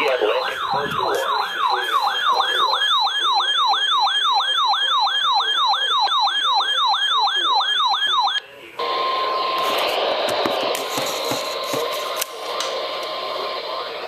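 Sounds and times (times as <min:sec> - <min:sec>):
emergency alert siren tone: 0:00.0 - 0:10.1.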